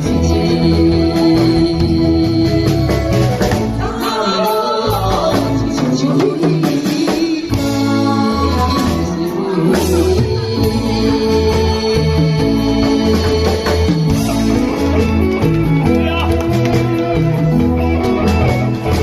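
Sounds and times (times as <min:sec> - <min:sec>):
man singing: 0:00.0 - 0:15.0
instrumental backing music: 0:00.0 - 0:19.0.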